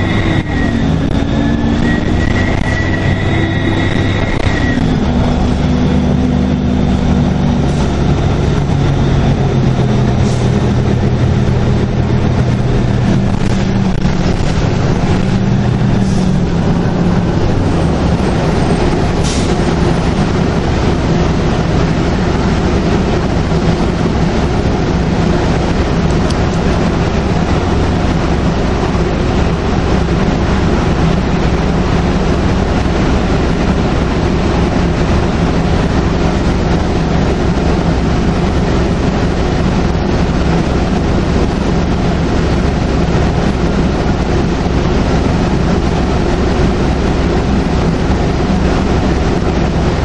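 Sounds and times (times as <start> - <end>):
high turbo whistle: 0.0 - 5.2
bus diesel engine droning: 0.0 - 50.0
road noise: 0.0 - 50.0.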